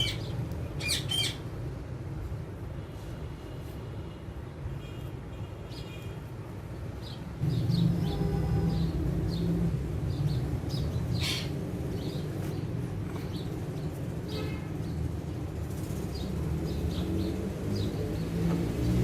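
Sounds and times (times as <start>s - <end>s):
birds chirping: 0.0s - 1.5s, 6.8s - 19.0s.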